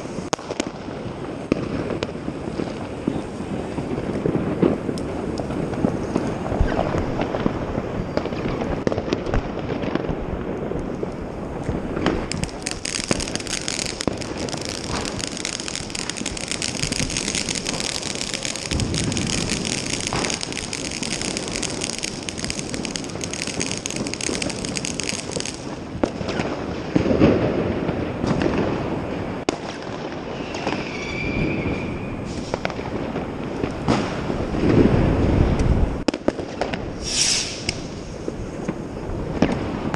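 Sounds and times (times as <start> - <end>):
dense firecracker crackling: 0.0 - 39.9
fireworks bangs and pops: 0.0 - 39.9
firework whistle: 7.8 - 8.9, 12.0 - 25.7, 30.2 - 32.8, 37.0 - 38.3.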